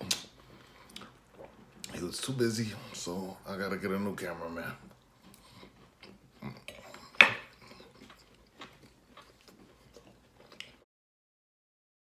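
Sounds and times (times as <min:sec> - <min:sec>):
cutlery and dishes clinking: 0:06.8 - 0:07.5.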